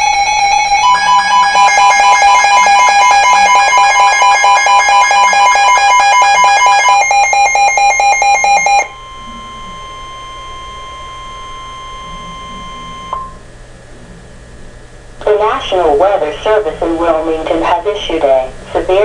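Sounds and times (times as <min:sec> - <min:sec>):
harsh two-tone alarm: 0:00.0 - 0:13.4.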